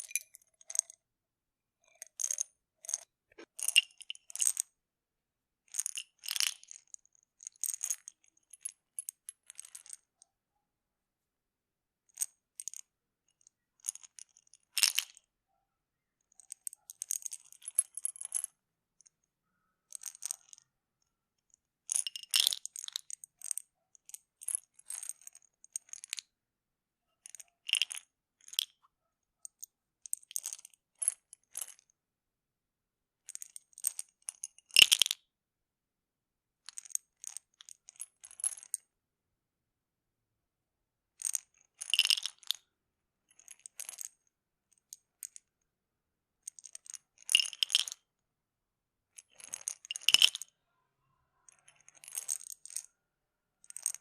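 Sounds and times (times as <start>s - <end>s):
pills rattling in bottle: 41.2s - 42.5s, 46.5s - 48.0s, 49.2s - 50.4s, 51.5s - 52.9s, 53.6s - 54.0s.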